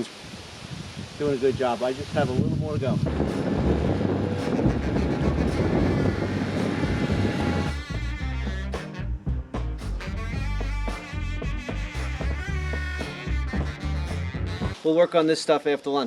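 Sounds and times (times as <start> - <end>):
wind on microphone: 0.0 - 9.1
background music with bass: 3.0 - 14.8.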